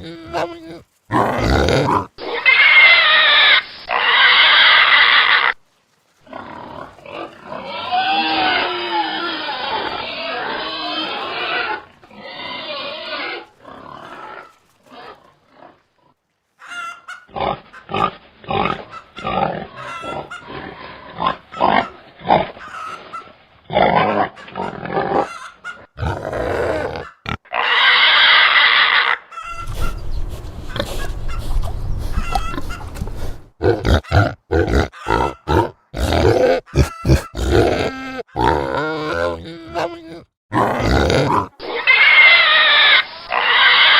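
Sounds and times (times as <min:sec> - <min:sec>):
pigs grunting: 0:00.0 - 0:05.5, 0:06.2 - 0:16.2, 0:17.3 - 0:43.9
high-pitched pig call: 0:00.0 - 0:05.6, 0:06.3 - 0:15.3, 0:16.6 - 0:30.1, 0:30.7 - 0:33.0, 0:33.6 - 0:43.9.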